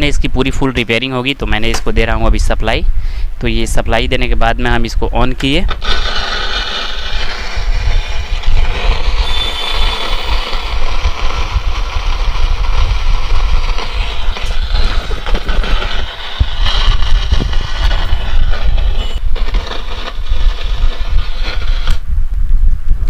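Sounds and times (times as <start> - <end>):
speaker distorted crackling: 3.7 - 23.0
heavy bass rumble: 7.0 - 23.0.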